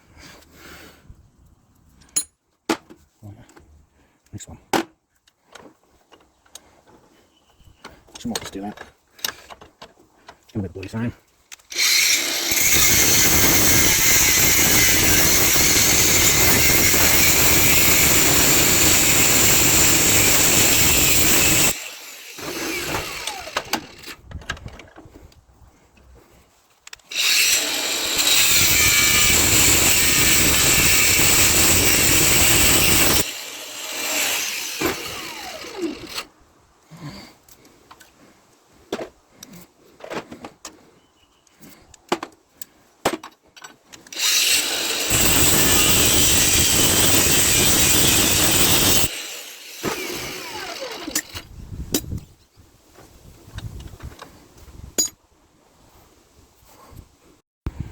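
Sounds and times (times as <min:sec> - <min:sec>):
power tool cutting metal: 0:11.7 - 0:24.0, 0:27.1 - 0:36.3, 0:44.1 - 0:51.4.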